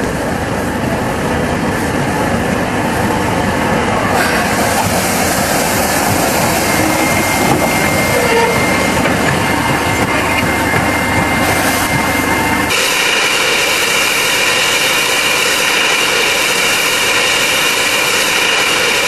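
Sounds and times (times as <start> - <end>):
train rumbling on track: 0.0 - 19.0
high squeal: 5.7 - 12.7.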